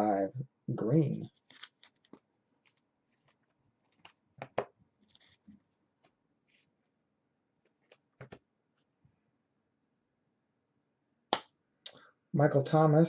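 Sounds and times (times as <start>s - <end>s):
hands handling cards and packaging: 1.0s - 6.7s, 7.6s - 8.5s.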